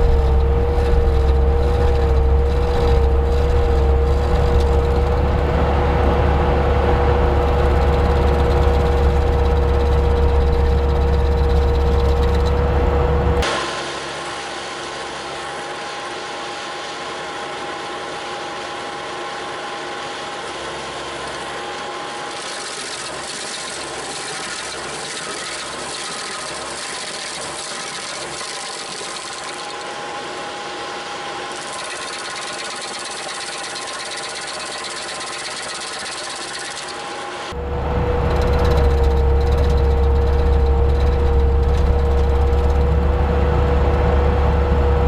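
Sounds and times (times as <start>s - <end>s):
high whining tones: 0.0s - 14.4s, 31.6s - 45.0s
stump grinder mechanical drone: 0.0s - 45.0s.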